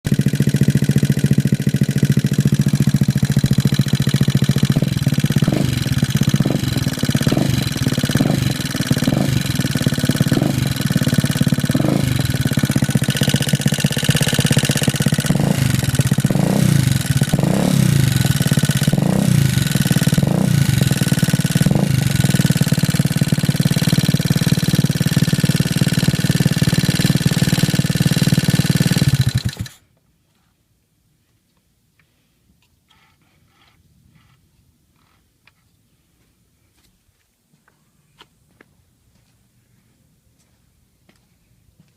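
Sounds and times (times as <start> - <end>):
scooter engine revving: 0.0 - 29.8
engine ticking: 0.1 - 29.8.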